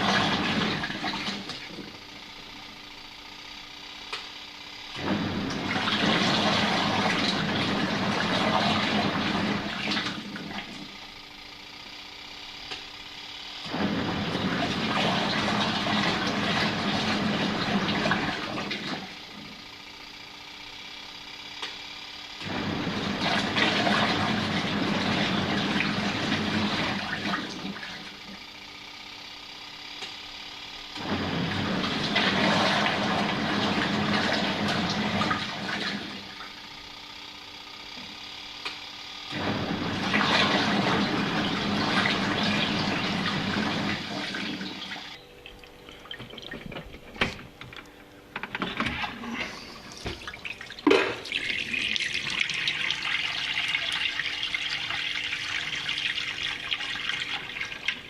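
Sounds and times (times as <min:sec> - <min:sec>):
washing machine churning water: 0:00.0 - 0:58.0.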